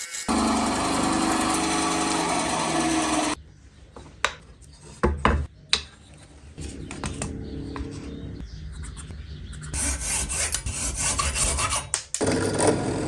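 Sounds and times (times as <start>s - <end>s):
loud power tool running: 0.3s - 3.4s
metal being filed by hand: 8.8s - 12.0s.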